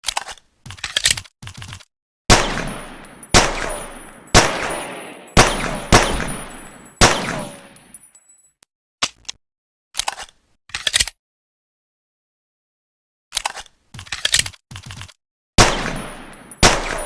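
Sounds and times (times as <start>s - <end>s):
pistol shots with echo: 2.3s - 7.9s, 15.6s - 17.0s.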